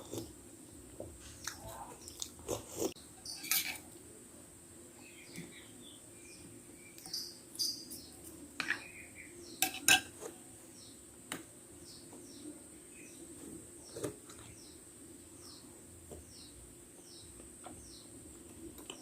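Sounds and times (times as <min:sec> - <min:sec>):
metal spoon clinking on bowl: 0:03.3 - 0:03.8.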